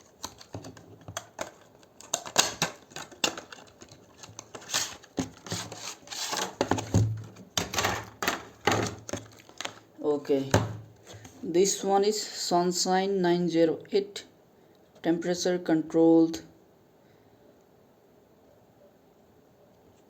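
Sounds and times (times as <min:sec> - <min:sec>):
packaging clicks and taps: 0:00.0 - 0:09.9
packaging rustling: 0:00.0 - 0:10.0.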